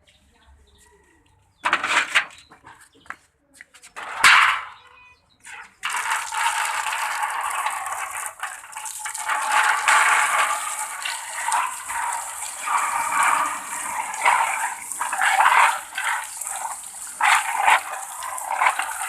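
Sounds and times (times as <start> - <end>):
running water splashing: 5.8 - 19.0.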